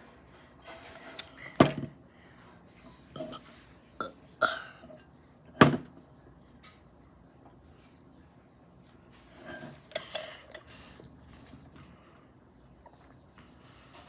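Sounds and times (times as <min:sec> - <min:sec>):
person burping: 0:03.2 - 0:03.4, 0:04.0 - 0:04.8.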